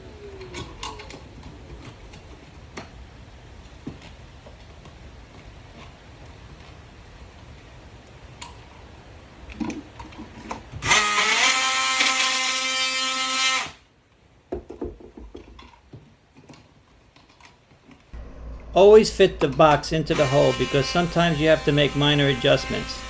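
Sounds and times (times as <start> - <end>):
oscillating multi-tool whine: 10.8 - 13.8, 18.2 - 23.0.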